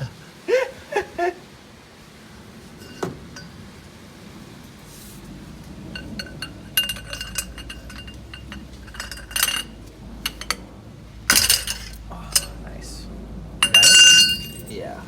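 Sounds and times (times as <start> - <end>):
hand tools clinking against metal: 2.8 - 3.6, 5.9 - 10.7, 11.3 - 12.7, 13.6 - 14.8.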